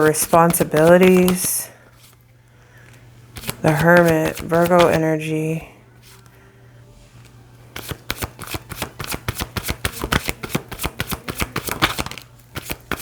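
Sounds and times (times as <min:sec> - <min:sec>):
cards being shuffled: 0:00.0 - 0:02.2, 0:03.3 - 0:05.1, 0:07.2 - 0:13.0.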